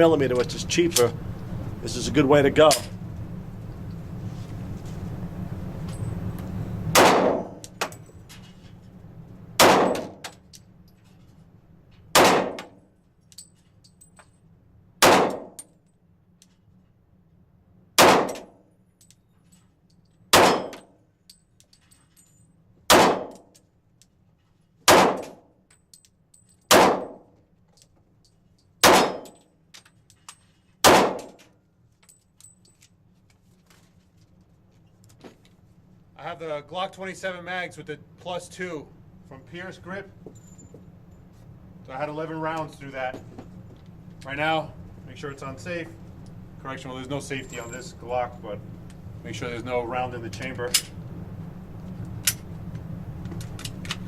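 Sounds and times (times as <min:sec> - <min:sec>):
pistol shots: 0:07.0 - 0:07.6, 0:09.6 - 0:10.2, 0:12.2 - 0:12.8, 0:15.0 - 0:15.6, 0:18.0 - 0:18.6, 0:20.3 - 0:20.8, 0:22.9 - 0:23.4, 0:24.9 - 0:25.4, 0:26.7 - 0:27.2, 0:28.8 - 0:29.4, 0:30.8 - 0:31.4.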